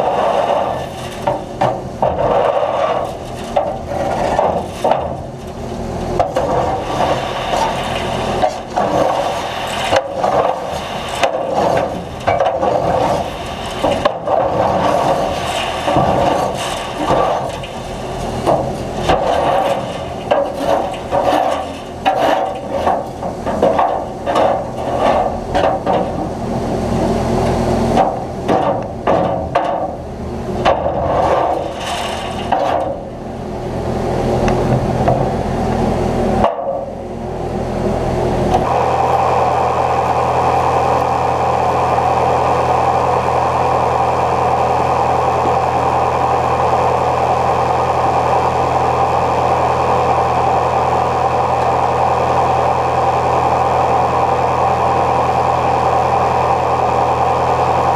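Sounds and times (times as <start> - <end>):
rattling and cracking of stalks: 0.0 - 26.5, 27.4 - 33.4
combine harvester engine hum: 0.0 - 57.9.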